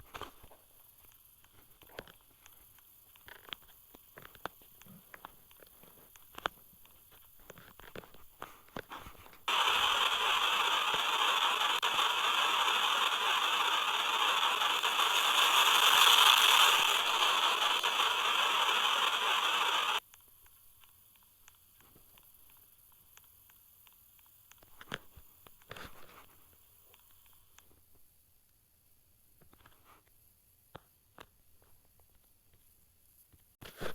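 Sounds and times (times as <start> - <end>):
steady rushing hiss: 8.2 - 24.5.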